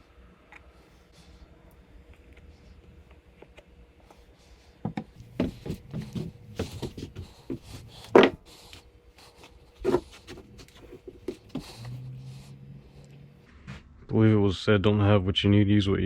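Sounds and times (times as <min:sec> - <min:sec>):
handling knocks and taps: 0:04.8 - 0:08.4.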